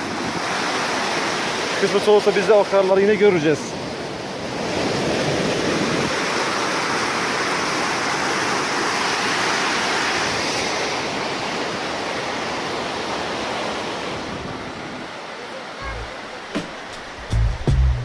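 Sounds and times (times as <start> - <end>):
mountain river rushing: 0.0 - 17.8.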